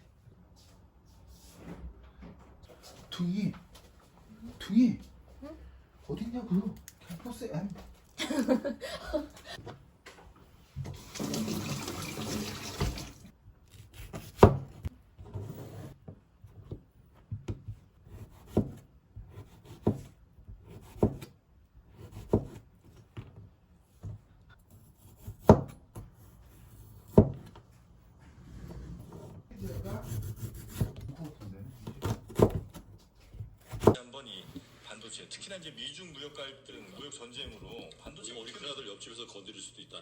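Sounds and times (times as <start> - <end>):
water running from a tap: 10.8 - 13.3.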